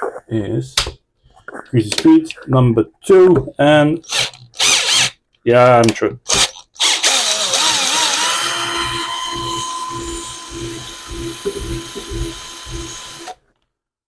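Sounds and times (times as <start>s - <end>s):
small electric drill whining: 4.1s - 5.1s, 6.3s - 13.4s.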